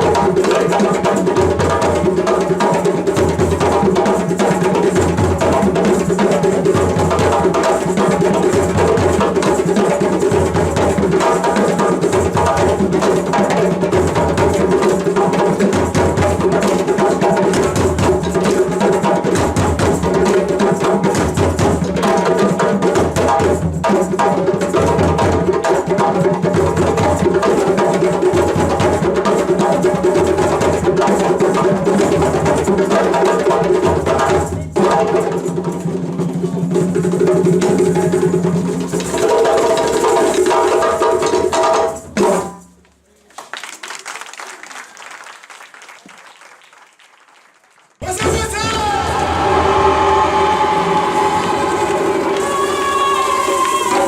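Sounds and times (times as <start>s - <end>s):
drums and percussion: 0.0s - 43.5s, 48.0s - 54.0s
sustained pitched instruments: 48.0s - 54.0s.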